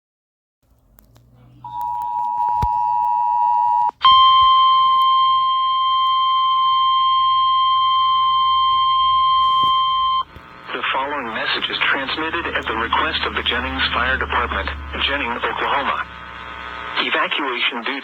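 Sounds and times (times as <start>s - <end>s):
faint low hum: 0.7s - 18.0s
two-tone attention signal: 1.6s - 10.3s
steady harsh warning tone: 4.4s - 18.0s.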